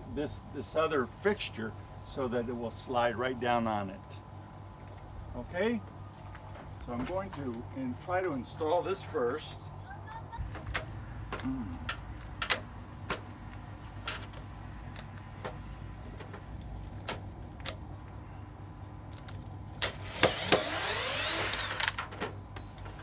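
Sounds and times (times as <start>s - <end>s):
clicks and knocks of handling parts: 10.5s - 18.2s
power drill spinning: 19.8s - 22.4s.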